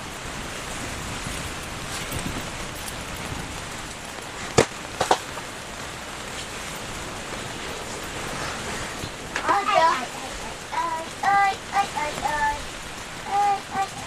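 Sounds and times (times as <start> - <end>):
rain: 0.0 - 14.0
wind hiss: 0.0 - 14.0.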